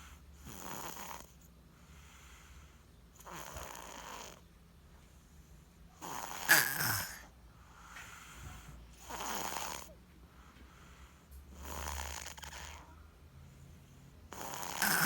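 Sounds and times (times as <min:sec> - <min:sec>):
baby snoring: 0:00.4 - 0:01.4, 0:03.2 - 0:04.4, 0:06.0 - 0:07.3, 0:09.0 - 0:10.0, 0:11.6 - 0:12.9, 0:14.3 - 0:15.0.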